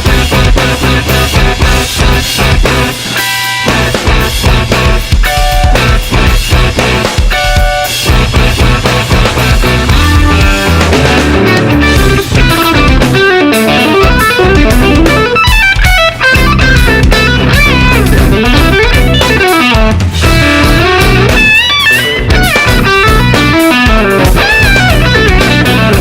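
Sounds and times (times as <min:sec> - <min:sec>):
rock music with electric guitar: 0:00.0 - 0:26.0.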